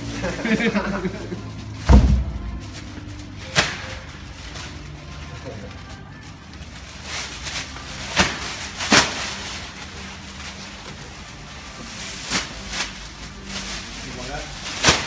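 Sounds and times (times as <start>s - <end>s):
steady low hum: 0.0s - 6.2s.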